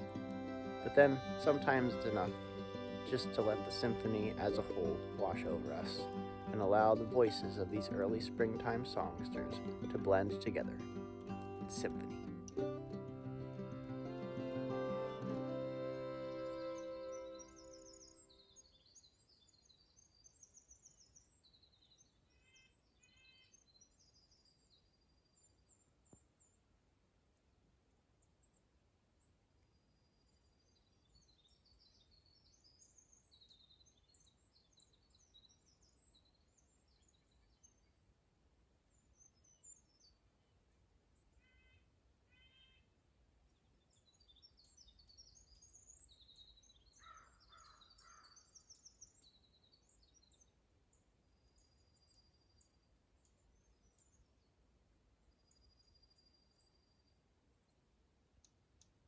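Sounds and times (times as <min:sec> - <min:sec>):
thin high whistled bird notes: 0:00.0 - 0:10.3, 0:14.2 - 0:18.5
low bird call notes: 0:00.0 - 0:10.8, 0:13.6 - 0:18.4
tumbling high birdsong: 0:00.0 - 0:18.4.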